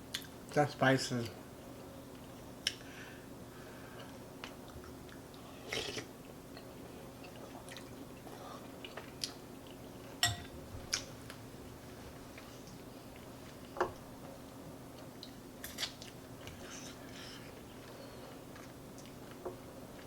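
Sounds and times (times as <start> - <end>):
quiet chewing: 3.9 - 10.2, 14.9 - 20.0.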